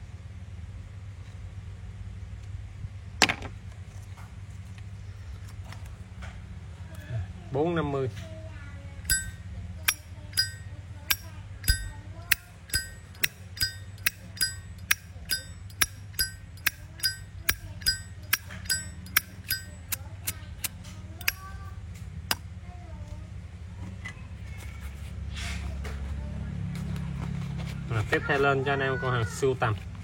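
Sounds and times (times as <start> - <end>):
lighter lid clicking with ring: 9.1 - 21.4.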